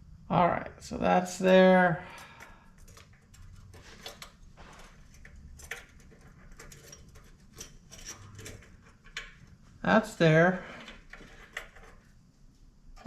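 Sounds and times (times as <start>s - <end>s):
small metal parts clicking: 2.1s - 9.6s, 10.7s - 12.1s.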